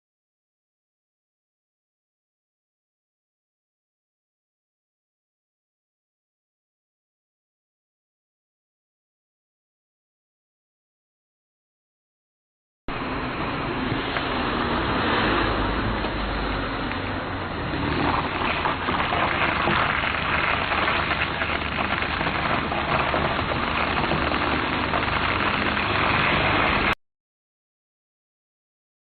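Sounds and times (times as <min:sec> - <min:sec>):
low engine hum: 0:12.9 - 0:27.0
car tyres crunching on gravel: 0:17.6 - 0:27.0.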